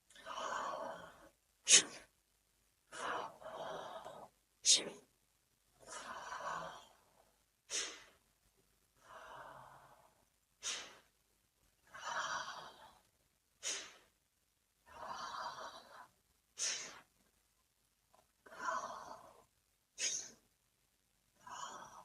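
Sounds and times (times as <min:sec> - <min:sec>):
person breathing: 0:00.1 - 0:02.0, 0:02.9 - 0:04.9, 0:05.8 - 0:08.2, 0:09.0 - 0:11.1, 0:11.8 - 0:14.1, 0:14.8 - 0:17.1, 0:18.4 - 0:20.4, 0:21.4 - 0:22.0
sharp forceful breath bursts: 0:07.7 - 0:08.2, 0:10.6 - 0:11.1, 0:13.6 - 0:14.1, 0:16.6 - 0:17.1, 0:20.0 - 0:20.4.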